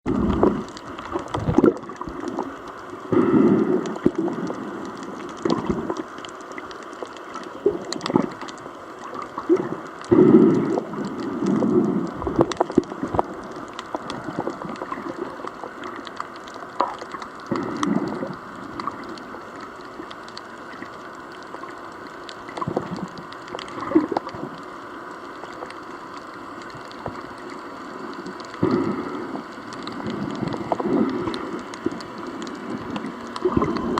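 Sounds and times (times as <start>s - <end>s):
steady hiss: 0.1s - 33.9s.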